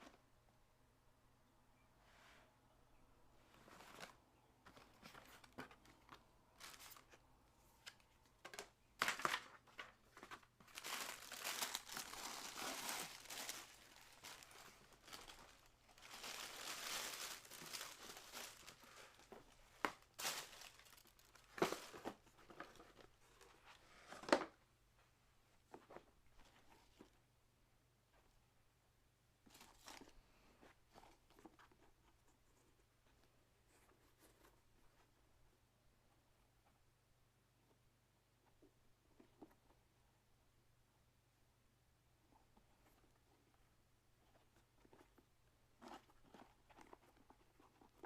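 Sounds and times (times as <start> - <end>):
paper packaging crinkling: 4.8 - 7.2, 8.5 - 22.2.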